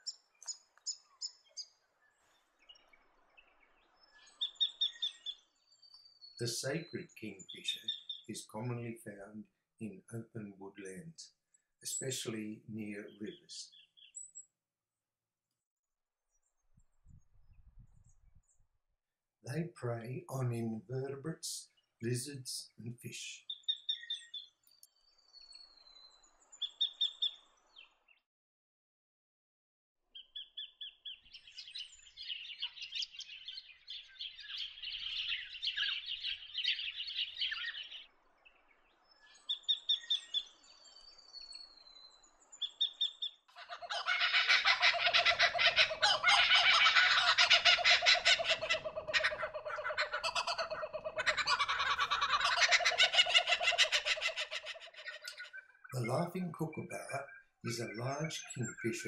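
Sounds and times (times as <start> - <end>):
kingfisher chattering calls: 43.6 - 55.6.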